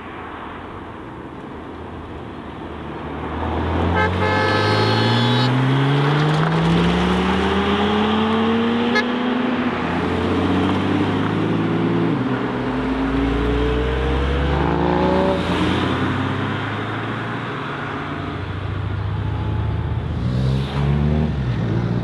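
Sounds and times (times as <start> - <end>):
sports car engine accelerating: 3.3 - 16.8
car horn: 3.8 - 6.0, 8.8 - 9.4.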